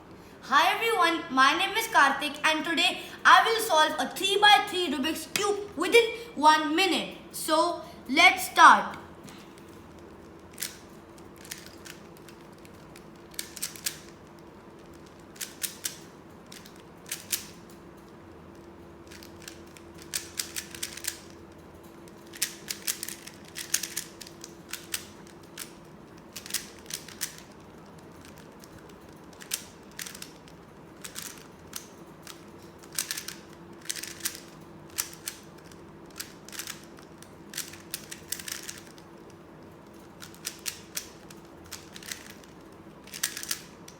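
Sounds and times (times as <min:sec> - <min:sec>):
puzzle cube plastic clicks: 0:09.9 - 0:17.7, 0:18.6 - 0:21.4, 0:22.2 - 0:43.9.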